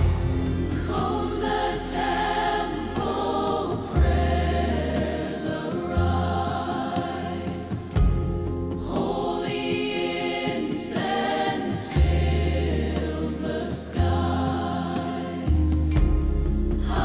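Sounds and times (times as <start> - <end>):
deep bass: 0.0 - 6.5, 7.6 - 10.0, 12.0 - 14.4, 15.5 - 17.0
choir singing held notes: 0.0 - 8.1, 8.7 - 15.6.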